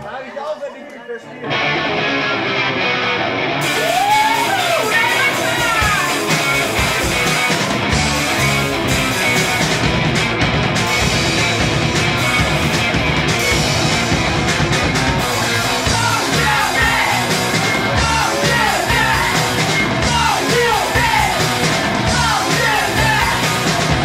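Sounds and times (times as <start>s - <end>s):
punk rock band playing live: 1.4s - 24.0s
shouted vocals: 3.6s - 6.8s, 15.4s - 24.0s.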